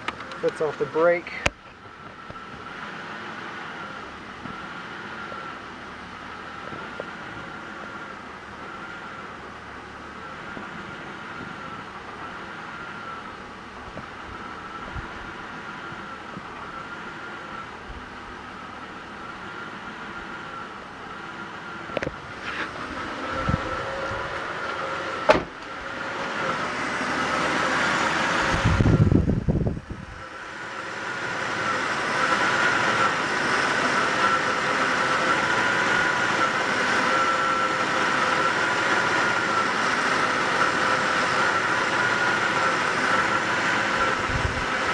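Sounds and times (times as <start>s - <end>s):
car engine idling with whine: 0.0s - 44.9s
loud low rumble: 22.1s - 25.9s.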